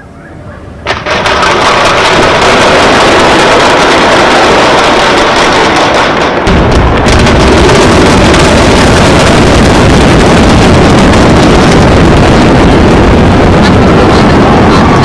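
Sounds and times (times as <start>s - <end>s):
building collapsing roar: 0.8s - 15.0s.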